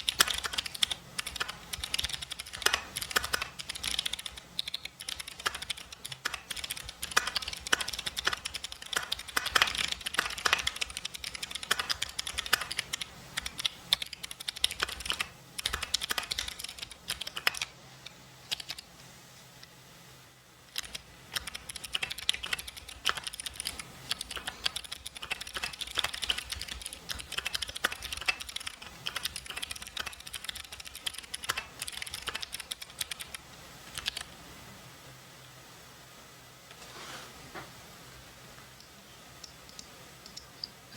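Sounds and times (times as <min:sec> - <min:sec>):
clicky mechanical keyboard typing: 0:00.0 - 0:17.7, 0:18.5 - 0:18.9, 0:20.7 - 0:34.3.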